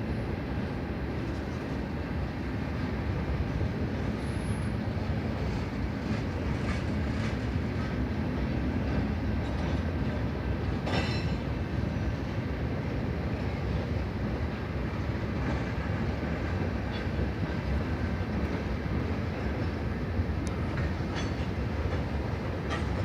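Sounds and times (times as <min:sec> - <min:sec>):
train wheels rumbling on rail: 0:00.0 - 0:23.0
faint rail clacks: 0:05.4 - 0:11.8, 0:15.3 - 0:23.0.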